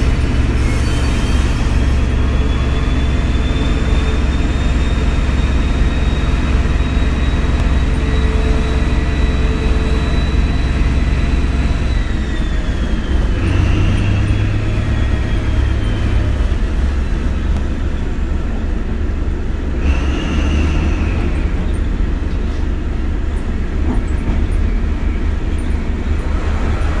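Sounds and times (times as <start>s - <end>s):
diesel engine low rumble: 0.0s - 27.0s
high whine: 0.0s - 27.0s.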